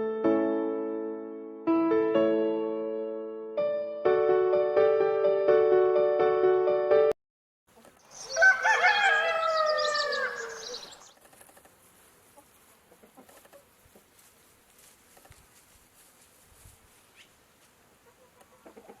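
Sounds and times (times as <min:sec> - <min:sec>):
rooster crowing: 0:08.2 - 0:11.0.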